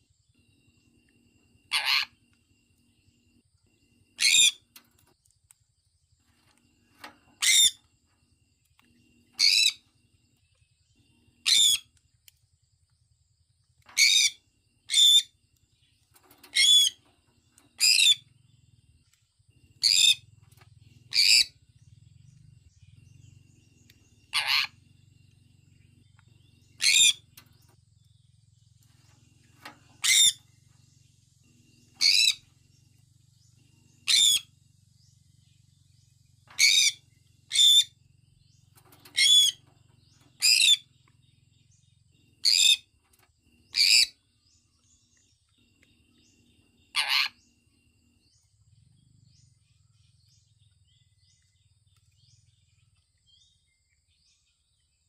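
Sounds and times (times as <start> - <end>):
parrot high-pitched calls: 1.7 - 2.2, 4.2 - 4.6, 7.4 - 7.8, 9.4 - 9.8, 11.4 - 11.9, 14.0 - 15.3, 16.5 - 17.0, 19.8 - 20.2, 21.1 - 21.5, 24.3 - 24.8, 26.8 - 27.2, 30.0 - 30.4, 32.0 - 32.4, 34.0 - 34.5, 36.6 - 37.9, 39.1 - 39.6, 40.4 - 40.8, 42.4 - 42.9, 43.7 - 44.2, 46.9 - 47.4.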